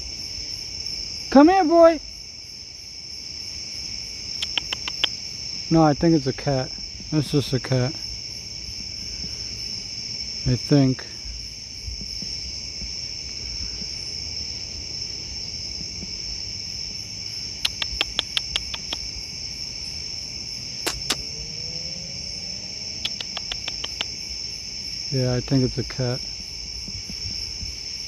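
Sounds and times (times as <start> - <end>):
crickets trilling: 0.0 - 28.0
sharp clicks: 4.4 - 5.2, 17.6 - 19.1, 20.8 - 21.2, 23.0 - 24.1.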